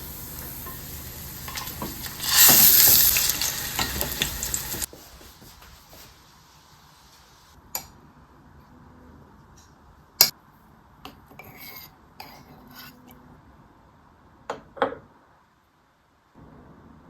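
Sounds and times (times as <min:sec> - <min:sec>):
kitchenware clinking: 0:00.2 - 0:04.9
kitchenware scraping and rattling: 0:00.4 - 0:04.9.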